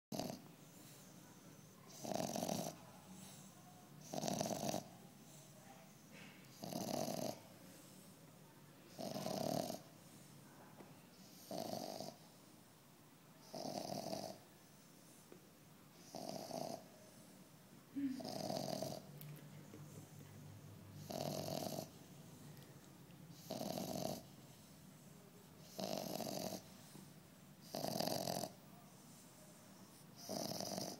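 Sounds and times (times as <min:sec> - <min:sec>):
dog snoring: 0:00.1 - 0:01.0, 0:01.8 - 0:05.0, 0:06.5 - 0:07.5, 0:08.9 - 0:09.9, 0:11.2 - 0:12.2, 0:13.4 - 0:14.4, 0:16.0 - 0:16.9, 0:18.1 - 0:19.1, 0:21.0 - 0:22.1, 0:23.3 - 0:24.7, 0:25.6 - 0:27.0, 0:27.6 - 0:28.6, 0:29.9 - 0:30.9.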